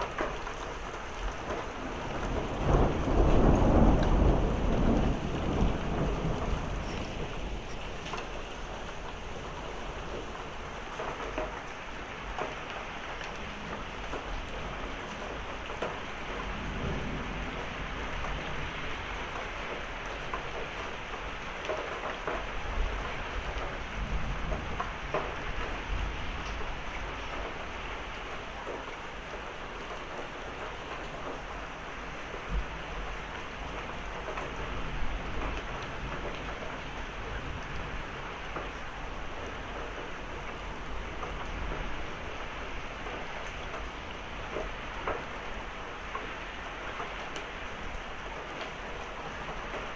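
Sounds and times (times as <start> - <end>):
heavy rain pouring: 0.0 - 49.9
thunder rumbling: 1.2 - 9.2, 13.3 - 19.8.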